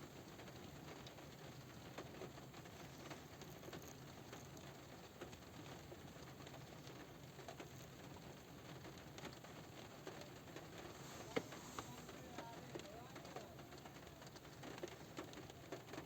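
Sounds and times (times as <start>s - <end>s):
light rain on a car roof: 0.0s - 16.0s
raindrop ticks: 0.0s - 16.0s.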